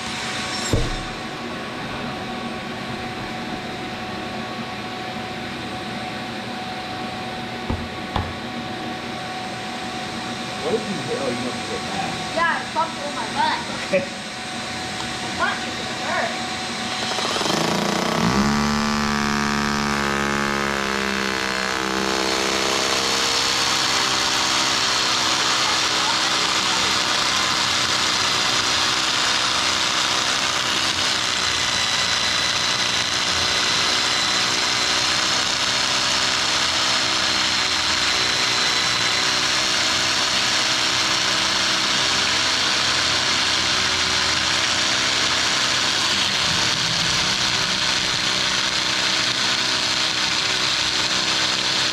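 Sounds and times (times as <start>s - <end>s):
hammer drill boring into concrete: 0.0s - 1.3s, 16.9s - 51.9s.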